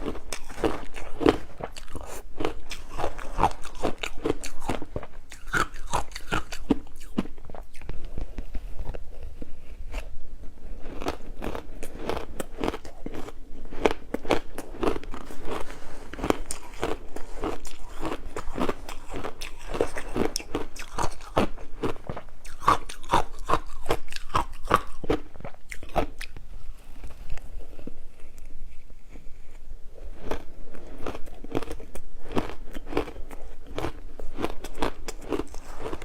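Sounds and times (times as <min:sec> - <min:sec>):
shaved ice being chewed: 0:00.0 - 0:10.1, 0:10.7 - 0:26.4, 0:30.2 - 0:36.0.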